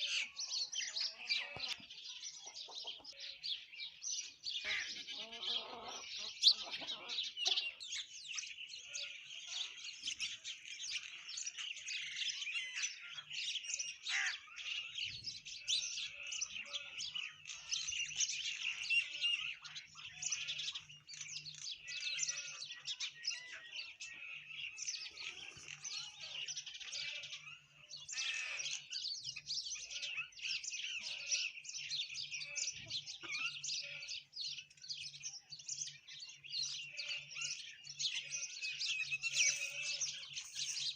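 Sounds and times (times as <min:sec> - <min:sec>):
birds chirping and chattering: 0:00.0 - 0:40.9.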